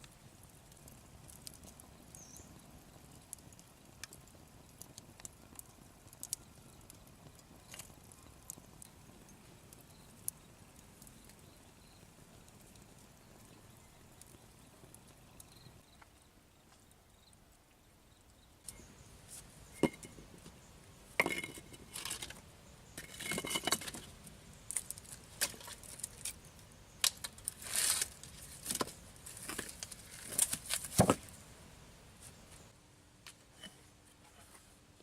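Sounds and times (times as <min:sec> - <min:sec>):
scraping and clinking of hard objects: 0:19.7 - 0:20.6, 0:21.2 - 0:22.4, 0:23.0 - 0:26.4.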